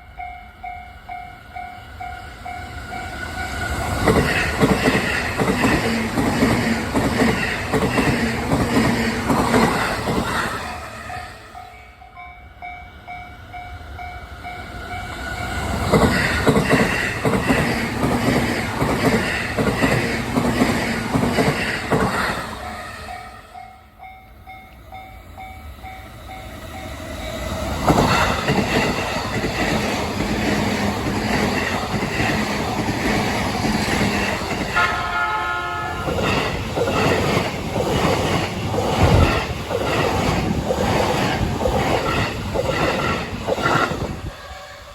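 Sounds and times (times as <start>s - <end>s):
level crossing warning bell: 0.0s - 5.1s, 11.0s - 17.6s
train wheels clattering: 3.2s - 10.6s, 15.0s - 23.2s, 26.9s - 44.1s.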